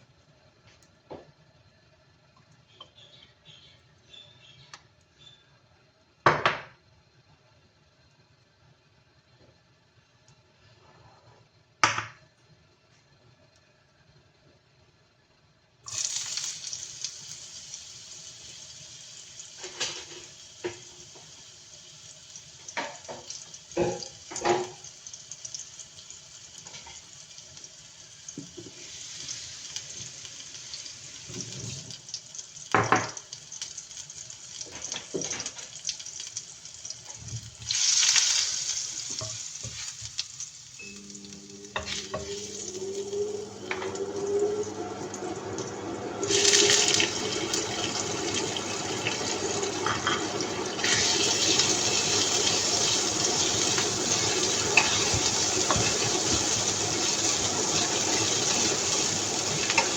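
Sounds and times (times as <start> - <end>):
food sizzling in a pan: 15.8 - 59.9
utensil scraping a pan: 53.8 - 59.9.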